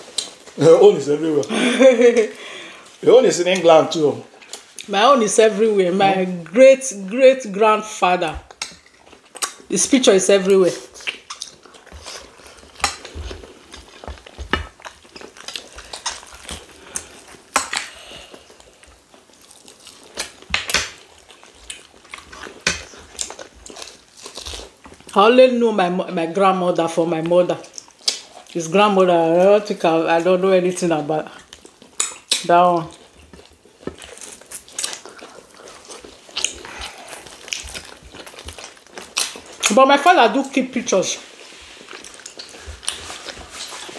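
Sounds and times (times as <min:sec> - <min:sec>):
chewing and mouth sounds: 0:00.0 - 0:00.6, 0:02.2 - 0:05.0, 0:08.4 - 0:09.7, 0:10.4 - 0:25.2, 0:27.2 - 0:28.6, 0:31.3 - 0:40.3, 0:41.2 - 0:43.9.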